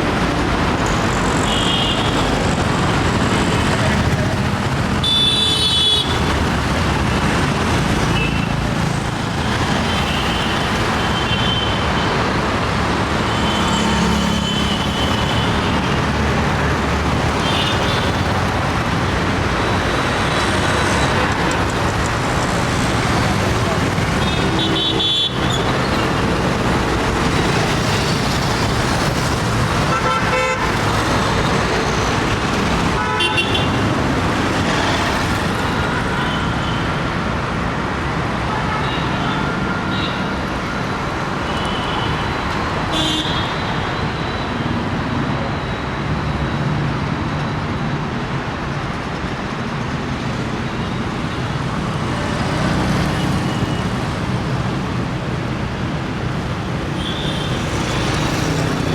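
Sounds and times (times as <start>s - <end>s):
road traffic rushing: 0.0s - 58.9s
vehicle horns honking: 29.9s - 30.8s, 33.0s - 33.8s, 42.9s - 43.7s.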